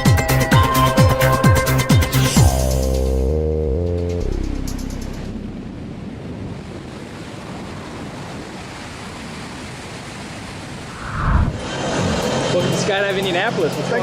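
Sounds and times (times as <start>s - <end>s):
intro music: 0.0s - 6.0s
wind rushing over microphone: 5.6s - 13.0s.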